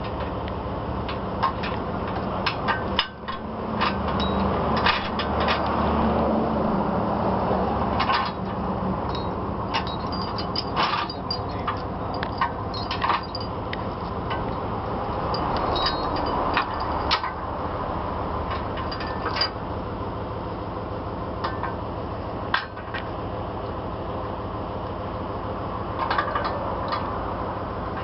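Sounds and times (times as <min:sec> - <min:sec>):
heavy vehicle running: 0:00.0 - 0:28.0
sharp rattles and knocks: 0:01.0 - 0:05.7, 0:08.0 - 0:17.4, 0:18.5 - 0:19.6, 0:26.0 - 0:27.2.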